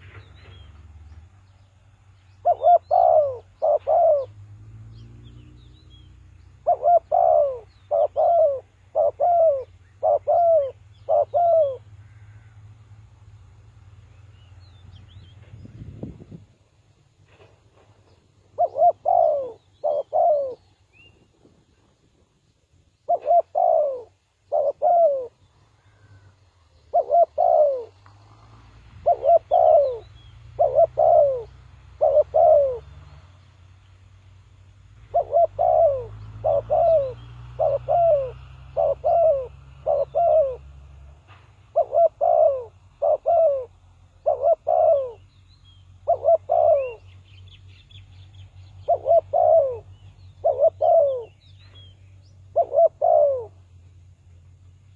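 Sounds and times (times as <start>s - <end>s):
dove cooing: 2.4s - 4.6s, 6.0s - 12.4s, 18.4s - 20.8s, 23.0s - 33.0s, 35.0s - 41.0s, 41.7s - 47.2s, 48.8s - 53.6s.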